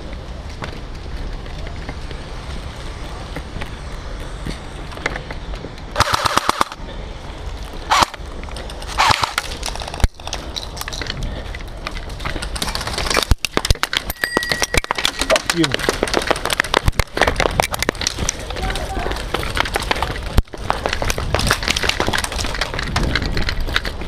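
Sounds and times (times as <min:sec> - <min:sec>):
airsoft gun bursts: 0:06.0 - 0:06.8.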